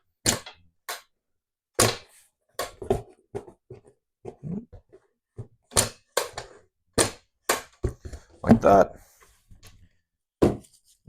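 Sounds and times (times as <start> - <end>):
carton knocks and taps: 10.4 - 10.7.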